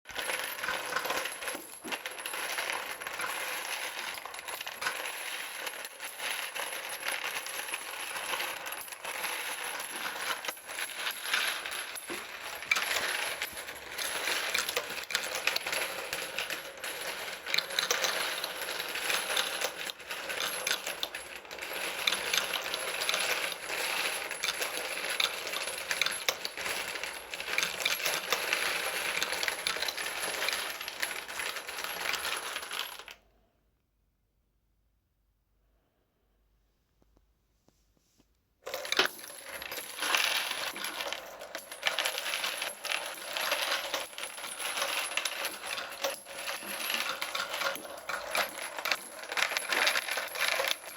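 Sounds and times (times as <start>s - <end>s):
metal cartridge cases clattering: 38.7s - 50.9s.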